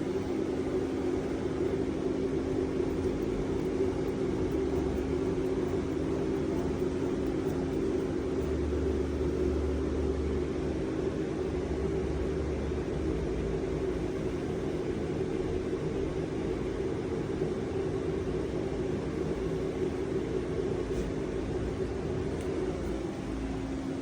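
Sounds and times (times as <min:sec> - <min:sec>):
machine mechanical hum: 0:00.0 - 0:24.0.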